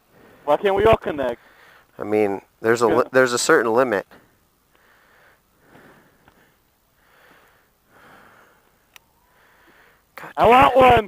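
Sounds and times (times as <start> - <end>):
soft breathing: 1.4 - 2.0, 4.1 - 10.2.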